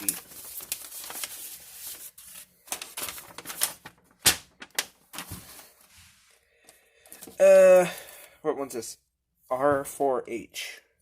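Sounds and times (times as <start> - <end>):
paper rustling: 0.0 - 6.4.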